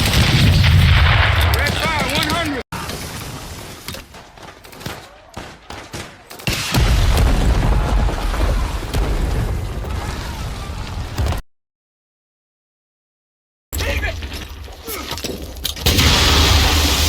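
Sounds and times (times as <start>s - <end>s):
explosions: 0.0s - 2.1s, 6.4s - 11.4s, 15.8s - 17.0s
gunfire: 0.0s - 10.4s.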